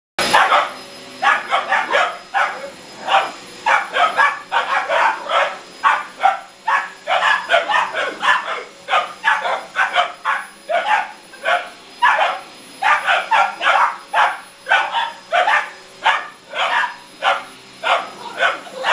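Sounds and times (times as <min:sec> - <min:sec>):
puppies barking: 0:00.2 - 0:18.9.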